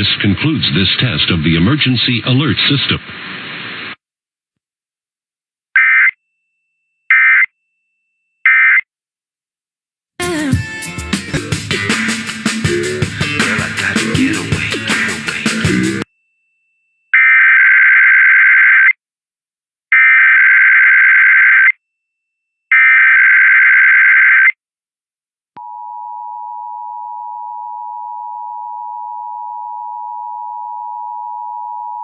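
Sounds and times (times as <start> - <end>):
digital data bursts: 11.0 - 16.0.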